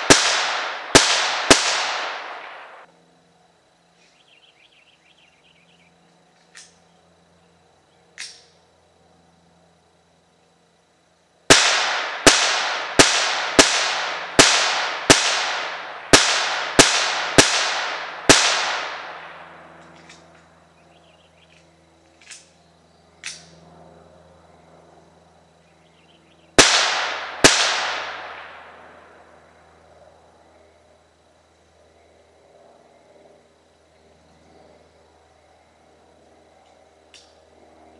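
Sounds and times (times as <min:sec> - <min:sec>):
pistol shots with echo: 0:00.0 - 0:02.9, 0:11.5 - 0:19.5, 0:26.6 - 0:28.9.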